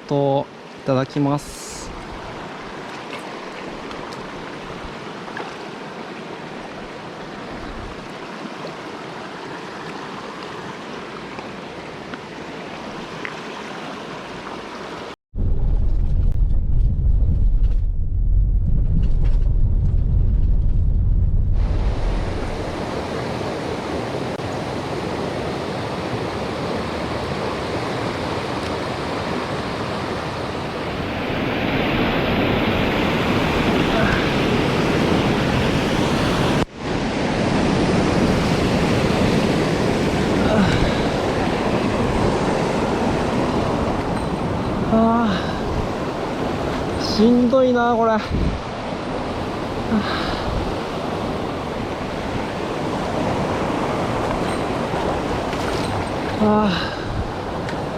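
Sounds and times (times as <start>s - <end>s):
stream water rushing: 0.0s - 15.2s, 21.9s - 57.9s
wind buffeting microphone: 15.4s - 47.3s, 48.2s - 57.9s.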